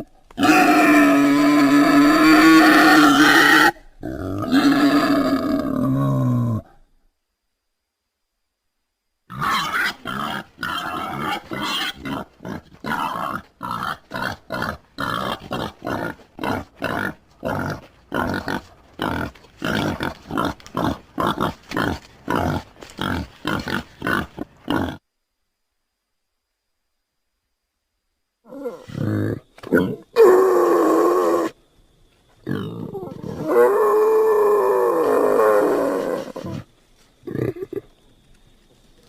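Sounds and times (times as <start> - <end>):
wild boar grunting: 9.3 - 25.0, 32.4 - 37.9.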